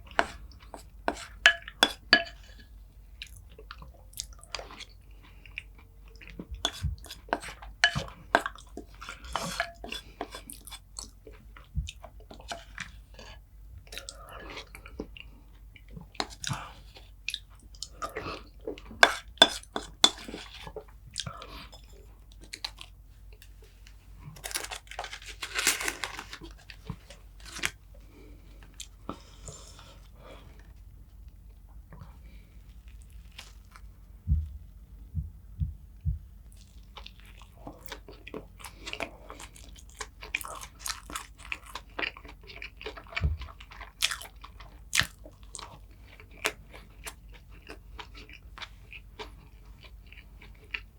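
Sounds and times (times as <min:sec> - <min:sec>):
person crunching food: 0:24.2 - 0:29.0, 0:32.7 - 0:33.9, 0:36.5 - 0:50.9
wet chewing: 0:36.5 - 0:50.9.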